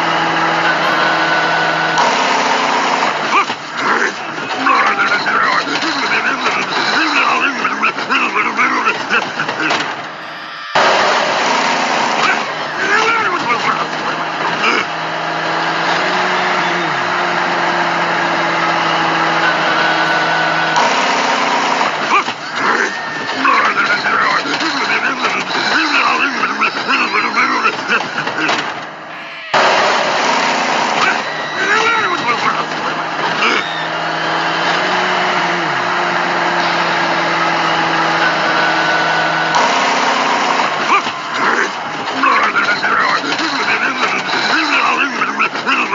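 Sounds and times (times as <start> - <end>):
road noise: 0.0 - 45.9
vehicle engine running: 0.0 - 45.9
short falling tone: 0.1 - 3.3.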